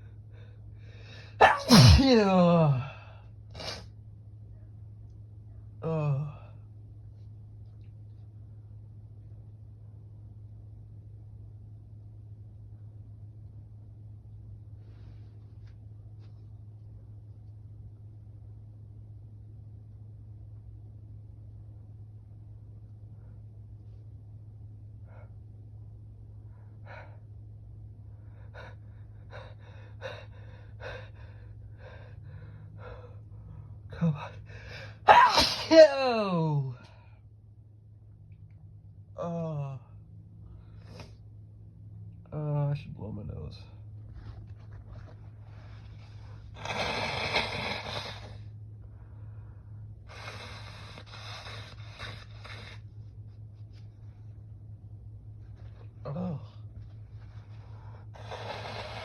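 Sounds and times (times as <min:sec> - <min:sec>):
man gasping pre-sneeze breaths: 0:01.3 - 0:03.0
man blowing his nose: 0:01.4 - 0:02.1, 0:46.6 - 0:48.4, 0:50.1 - 0:52.9, 0:58.2 - 0:59.0.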